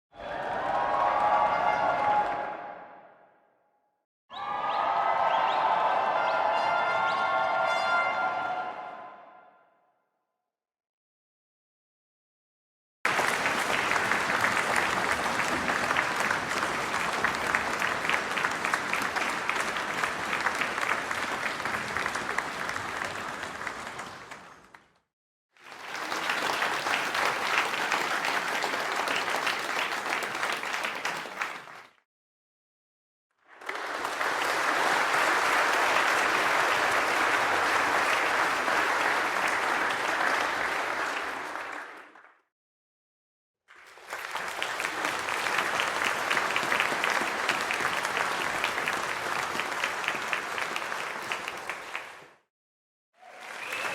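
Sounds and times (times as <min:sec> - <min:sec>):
audience applause: 0:00.2 - 0:02.8, 0:04.3 - 0:08.0, 0:13.1 - 0:25.0, 0:25.6 - 0:32.0, 0:33.4 - 0:42.3, 0:43.7 - 0:52.4, 0:53.2 - 0:53.9.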